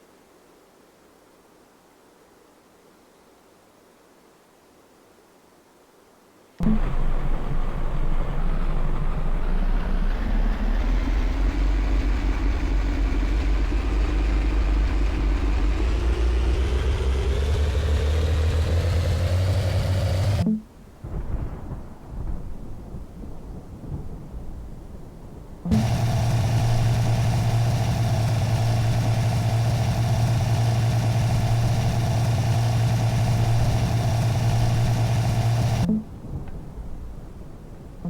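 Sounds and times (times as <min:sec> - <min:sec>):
vehicle engine accelerating: 0:06.6 - 0:20.6, 0:25.7 - 0:36.0.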